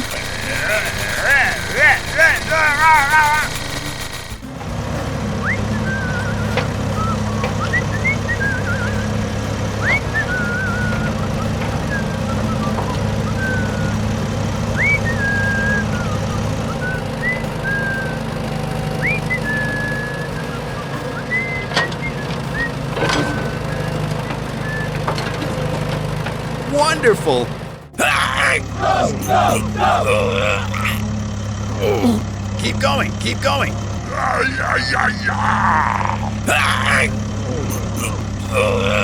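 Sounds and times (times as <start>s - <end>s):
sharp clicks: 0.0s - 4.5s
rc vehicle engine drone: 0.0s - 28.0s, 28.6s - 39.0s
short whistled notes: 5.3s - 25.5s.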